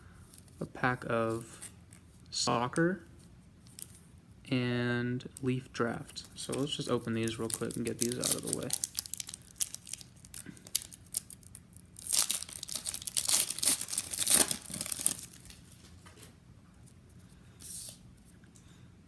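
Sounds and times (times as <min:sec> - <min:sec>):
wrappers tearing and crinkling: 0:06.0 - 0:15.9.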